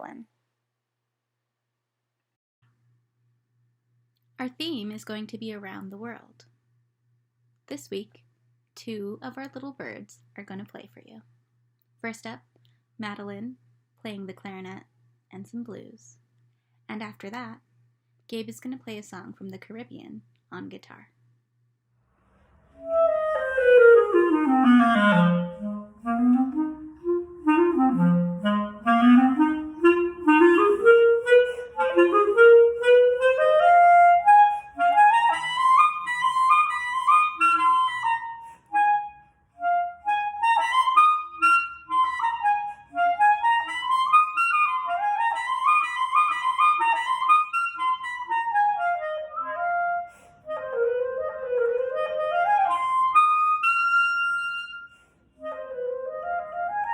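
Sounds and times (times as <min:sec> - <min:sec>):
clarinet playing blues: 0:22.8 - 0:56.9.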